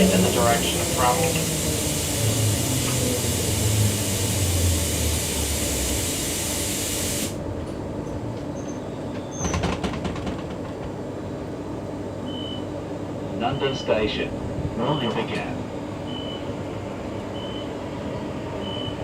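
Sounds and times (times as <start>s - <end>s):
loud hiss: 0.0s - 7.4s
train interior rumble: 0.0s - 19.0s.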